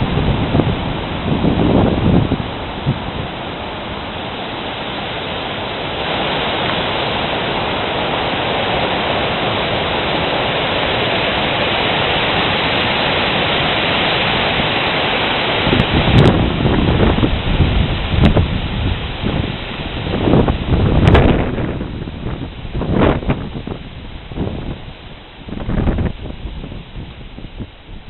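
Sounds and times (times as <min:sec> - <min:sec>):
wind buffeting microphone: 0:00.0 - 0:04.1, 0:15.6 - 0:28.0
strong wind rushing: 0:00.0 - 0:28.0.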